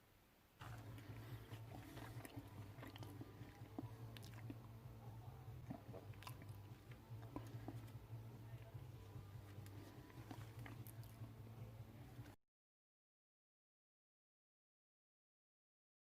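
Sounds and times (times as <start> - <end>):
low steady hum: 0.0 - 12.4.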